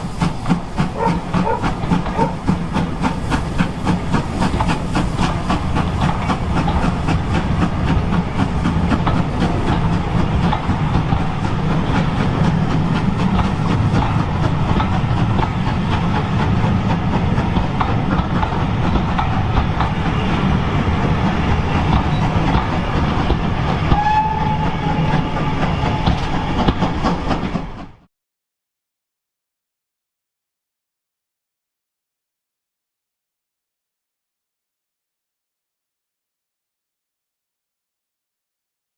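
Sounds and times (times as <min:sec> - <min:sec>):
train wheels clattering on rails: 0:00.0 - 0:28.1.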